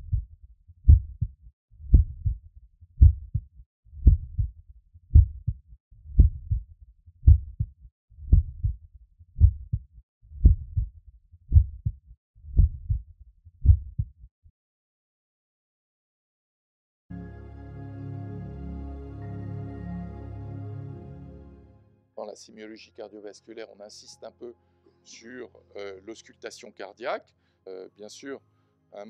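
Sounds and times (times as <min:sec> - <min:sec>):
faint sounds between heartbeats: 0:00.0 - 0:02.4, 0:03.0 - 0:08.8, 0:09.4 - 0:09.8, 0:10.4 - 0:10.9, 0:11.5 - 0:14.1
heartbeat through stethoscope: 0:00.0 - 0:02.4, 0:03.0 - 0:08.8, 0:09.4 - 0:09.8, 0:10.4 - 0:14.1.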